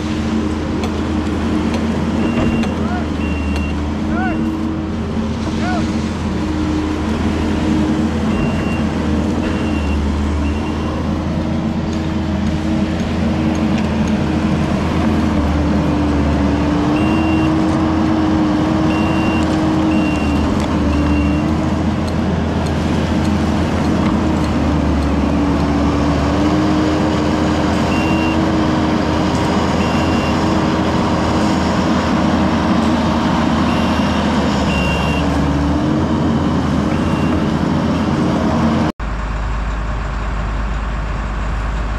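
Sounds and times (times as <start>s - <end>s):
heavy vehicle engine running: 0.0s - 41.9s
backup alarm beeping: 2.2s - 4.5s, 8.3s - 8.9s, 9.5s - 11.0s, 18.9s - 21.5s, 33.7s - 35.3s, 36.9s - 37.4s.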